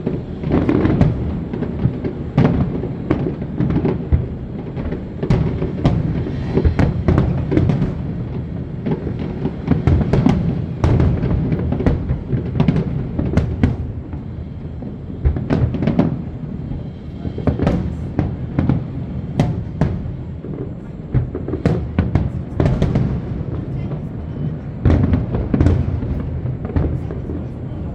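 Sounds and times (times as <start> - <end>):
fireworks bangs and crackles: 0.0 - 27.9.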